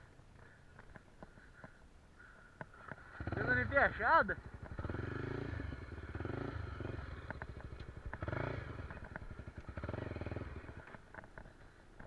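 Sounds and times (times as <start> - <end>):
motorcycle engine revving: 2.9 - 11.6.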